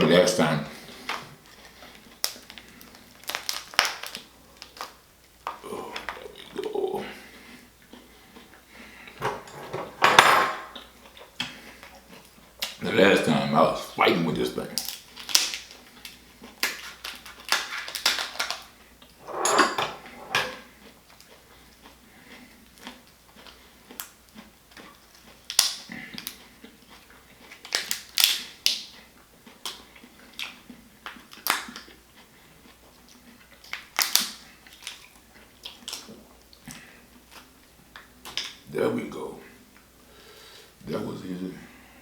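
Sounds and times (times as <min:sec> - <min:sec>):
lobster shell cracking: 0:02.2 - 0:06.2, 0:14.8 - 0:18.7, 0:25.5 - 0:26.4, 0:27.7 - 0:28.8, 0:33.7 - 0:35.0.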